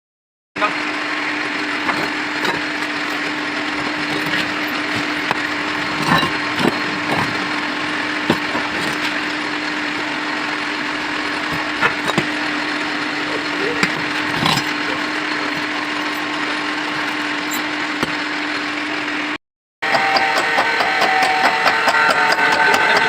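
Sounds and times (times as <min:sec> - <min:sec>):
lathe motor humming: 0:00.6 - 0:23.0
clicks and knocks: 0:01.8 - 0:12.4.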